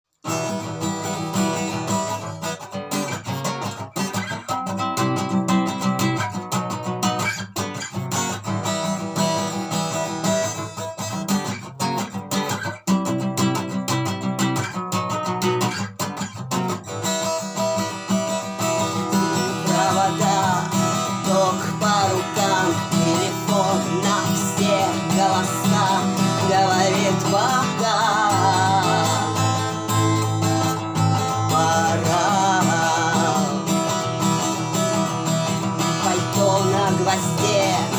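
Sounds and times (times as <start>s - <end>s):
acoustic guitar strumming: 0.2s - 37.9s
wavering voice melody: 18.6s - 37.9s.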